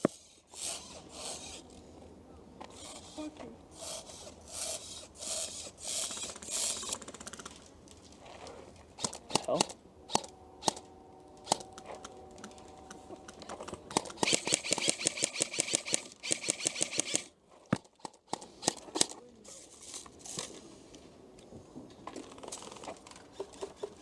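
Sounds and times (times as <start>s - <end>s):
airsoft rifle rapid clicking: 9.0s - 10.8s, 13.9s - 19.2s.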